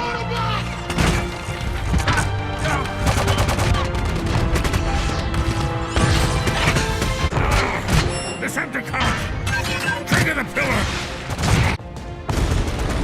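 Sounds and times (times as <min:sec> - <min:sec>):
orchestral score: 0:00.0 - 0:13.0
rapid gunfire: 0:03.0 - 0:05.2, 0:11.3 - 0:13.0.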